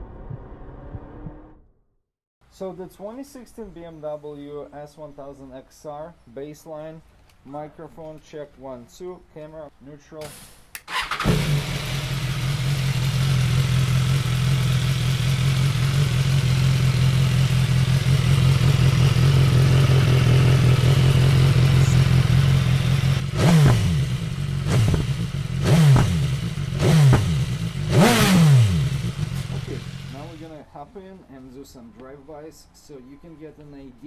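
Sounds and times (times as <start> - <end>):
motorcycle engine idling and revving: 10.9 - 30.5.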